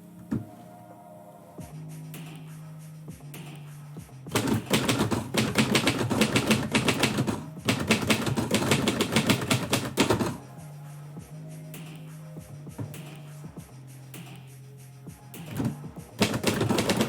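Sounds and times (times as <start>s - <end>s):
typewriter keys striking: 4.3s - 10.4s, 15.5s - 17.0s.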